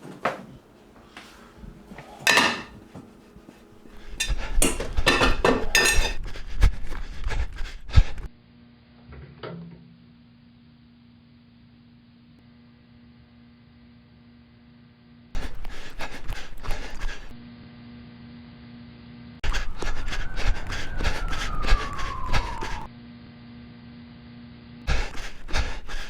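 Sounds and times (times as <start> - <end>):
dishes and cutlery clattering: 1.2 - 6.2
low hum: 19.4 - 22.9.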